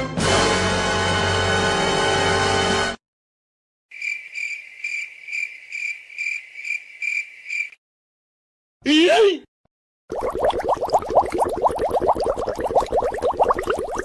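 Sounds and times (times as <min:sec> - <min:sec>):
crickets chirping: 0:03.9 - 0:07.8.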